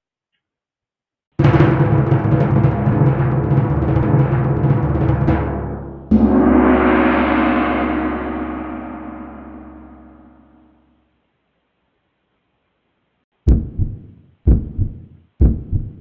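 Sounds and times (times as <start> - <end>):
timpani-like drum roll: 1.4 - 10.7
gong-like crash: 6.1 - 10.8.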